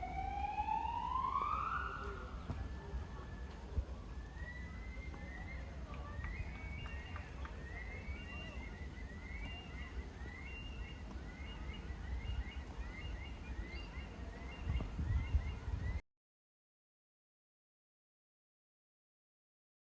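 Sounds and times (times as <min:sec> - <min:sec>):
birds chirping: 0:00.1 - 0:16.0.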